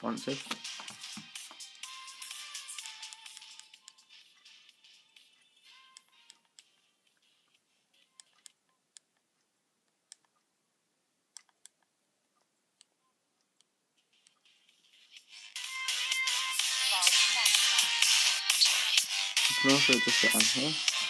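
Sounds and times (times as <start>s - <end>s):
music: 0.0s - 8.4s, 14.0s - 21.0s.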